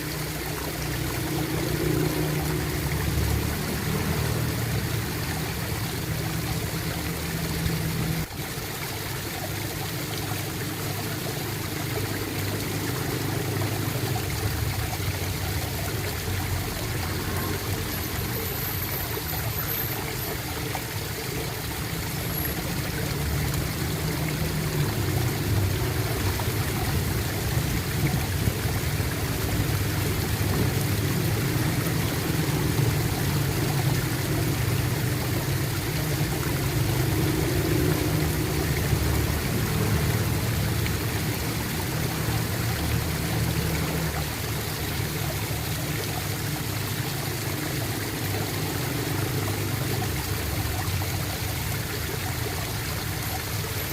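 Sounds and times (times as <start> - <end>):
running water gurgling: 0.0 - 53.9.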